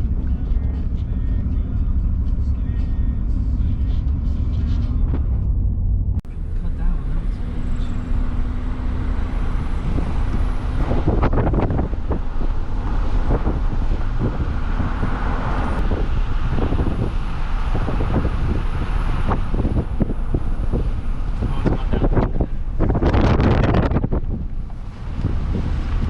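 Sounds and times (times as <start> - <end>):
wind gusting over microphone: 7.4 - 26.0.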